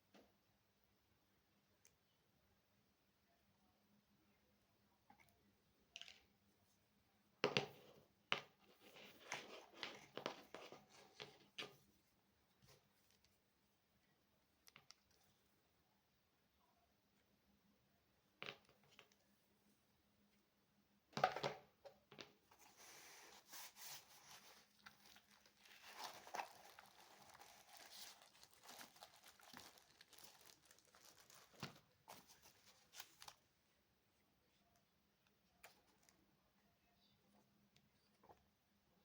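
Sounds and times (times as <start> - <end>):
plastic wrapping crinkling: 22.8 - 33.4.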